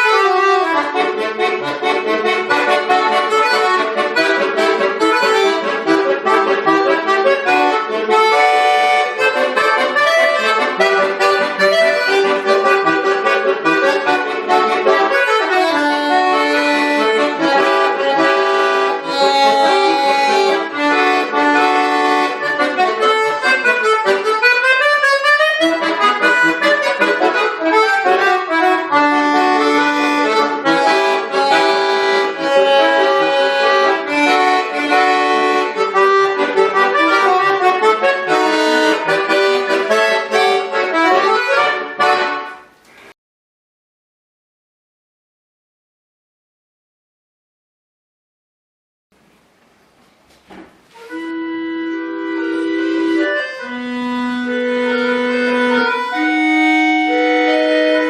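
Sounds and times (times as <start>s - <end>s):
button accordion playing: 0.0s - 42.7s, 50.9s - 58.0s.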